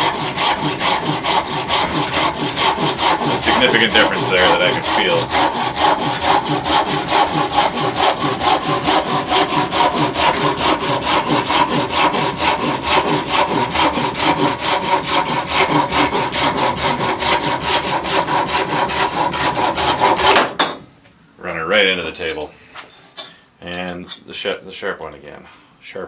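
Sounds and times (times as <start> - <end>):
pull saw cutting wood: 0.0 - 20.6.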